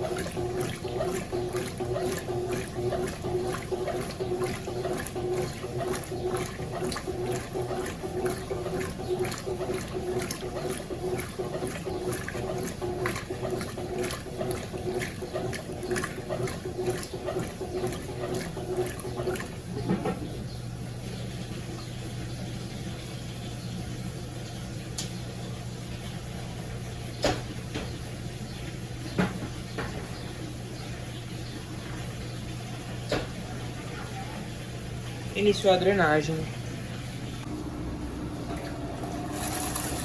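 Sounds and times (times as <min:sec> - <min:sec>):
water running out: 0:00.0 - 0:20.1, 0:38.4 - 0:40.0
drain pump humming: 0:00.0 - 0:40.0
washing machine sloshing: 0:00.0 - 0:40.0.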